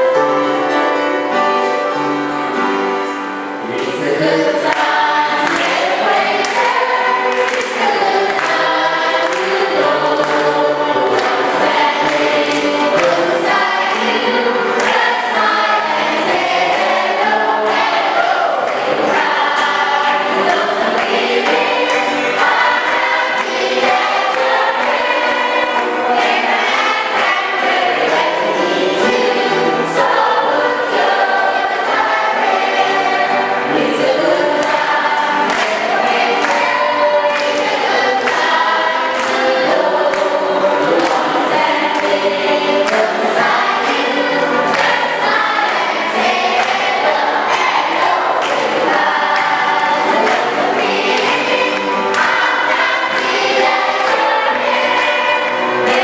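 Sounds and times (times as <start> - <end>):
choir singing gospel: 0.0 - 56.0.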